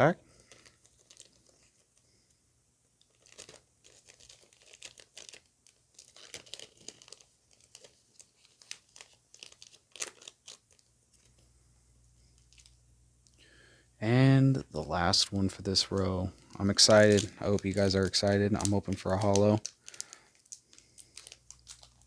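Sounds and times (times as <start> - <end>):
foil wrapper crinkling: 0.3 - 2.2, 3.0 - 11.4, 12.3 - 12.8, 15.4 - 22.0.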